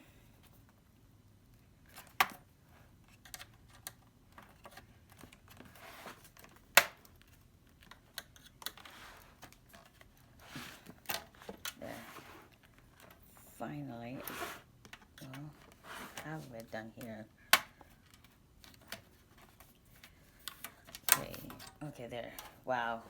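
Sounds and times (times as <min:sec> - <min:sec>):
light scraping: 0:14.1 - 0:14.7, 0:15.6 - 0:16.6.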